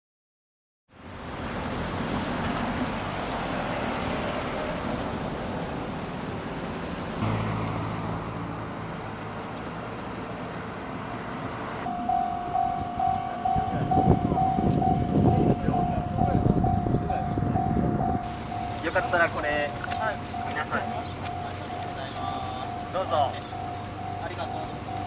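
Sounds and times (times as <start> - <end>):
road traffic passing: 0.9 - 25.0
level crossing warning bell: 11.8 - 25.0
engine running: 17.5 - 25.0.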